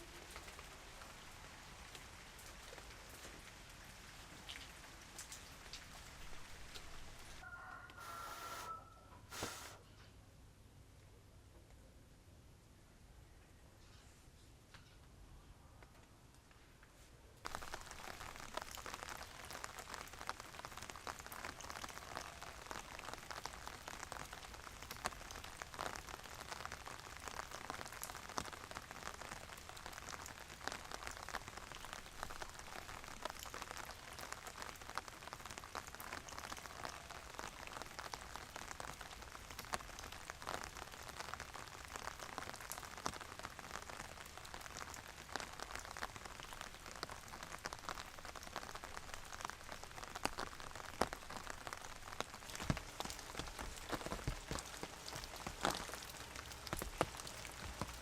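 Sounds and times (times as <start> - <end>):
raindrops ticking on a surface: 0.0 - 8.0, 15.8 - 58.0
steady rain falling: 0.0 - 9.8, 15.8 - 58.0.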